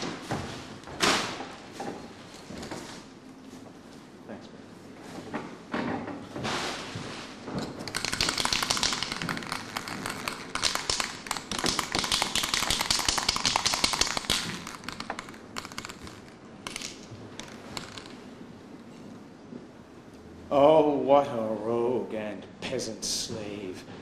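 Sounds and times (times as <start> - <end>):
fast clatter of sharp taps: 7.8 - 18.1.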